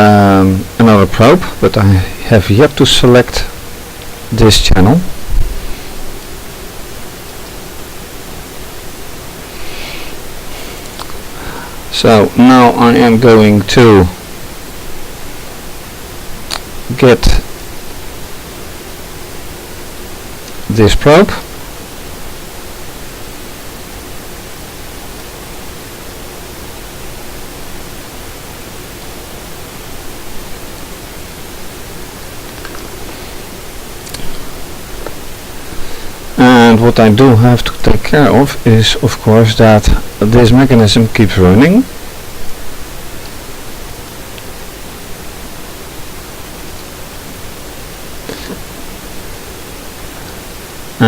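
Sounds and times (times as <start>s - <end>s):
small electric motors humming: 0.0s - 36.8s
even hiss: 0.0s - 51.0s.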